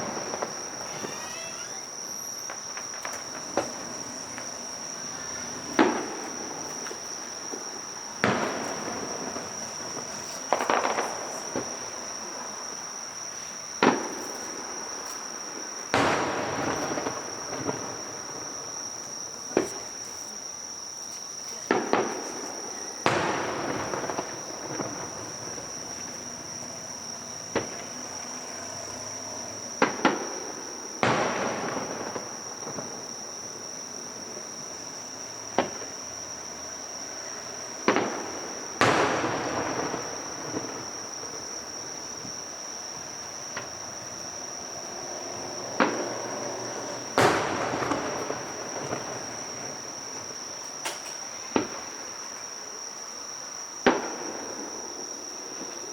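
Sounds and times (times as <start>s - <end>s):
fireworks bursting: 0.0s - 12.7s, 13.8s - 20.1s, 21.5s - 34.6s, 37.8s - 42.4s, 45.7s - 50.4s, 53.8s - 55.7s
high insect trill: 0.0s - 55.9s.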